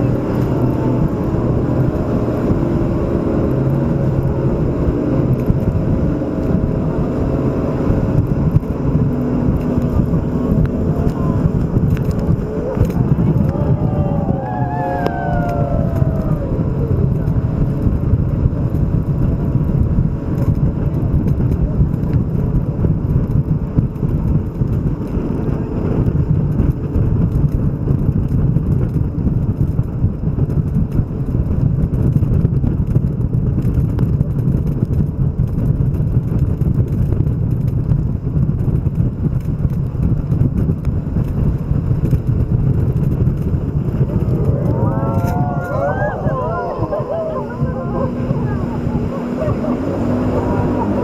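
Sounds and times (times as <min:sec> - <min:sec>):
motorboat engine roar: 0:00.0 - 0:51.0
wind: 0:00.0 - 0:51.0
rushing water: 0:44.1 - 0:51.0.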